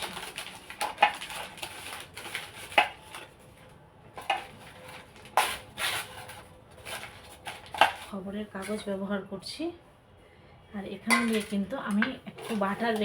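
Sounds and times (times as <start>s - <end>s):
paper rustling and crinkling: 0.0s - 8.8s.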